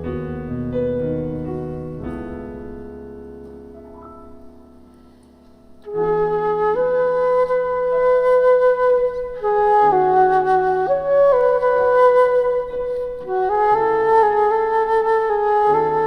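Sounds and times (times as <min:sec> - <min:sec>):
flute playing slow melody: 0:05.7 - 0:16.0.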